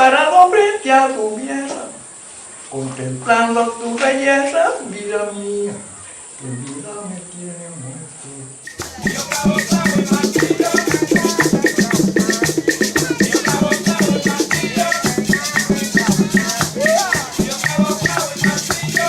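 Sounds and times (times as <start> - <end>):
fast maraca shaking: 8.6 - 19.0
up-tempo music: 8.6 - 19.0.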